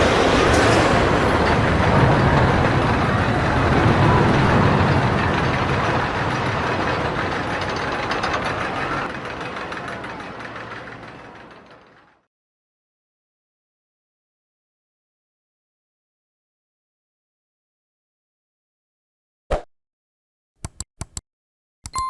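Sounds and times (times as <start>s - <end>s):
roller coaster rumbling on track: 0.0s - 12.3s.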